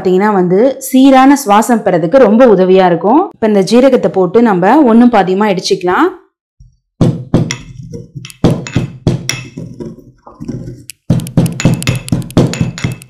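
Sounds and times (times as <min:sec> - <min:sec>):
pestle pounding in a mortar: 0:07.0 - 0:13.0.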